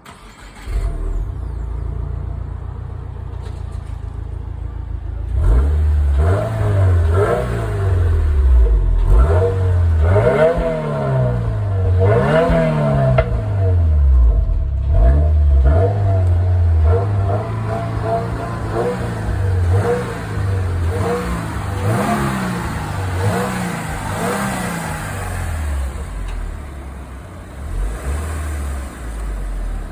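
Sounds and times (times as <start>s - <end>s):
car engine idling and revving: 0.0s - 29.9s.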